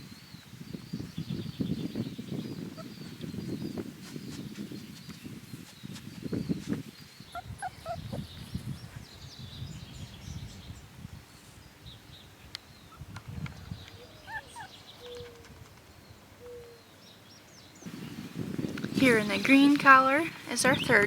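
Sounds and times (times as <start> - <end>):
puppy whimpering: 7.3 - 8.4, 14.1 - 14.7.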